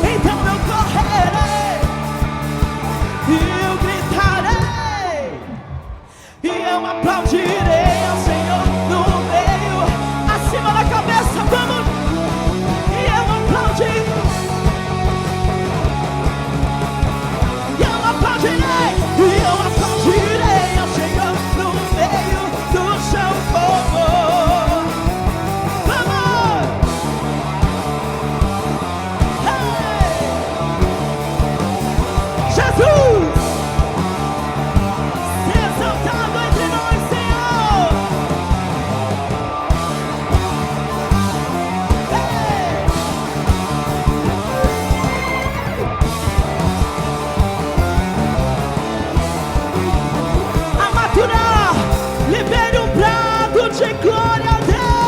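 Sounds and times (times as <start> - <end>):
steady drum beat: 0.0 - 5.2, 7.3 - 55.0
live rock band playing: 0.0 - 55.0
person singing: 6.3 - 14.5, 17.7 - 25.1, 29.2 - 30.9, 32.4 - 33.5, 41.9 - 43.4, 50.5 - 55.0
people shouting: 44.4 - 46.0.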